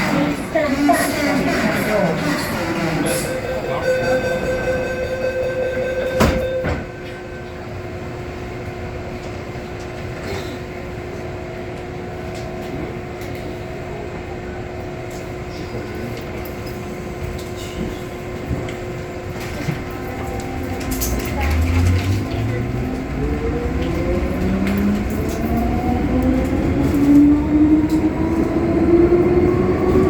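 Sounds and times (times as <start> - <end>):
train doors shutting: 0.0 - 8.4, 15.1 - 30.0
train traction hum: 0.0 - 30.0
door-closing warning tone: 3.0 - 7.8.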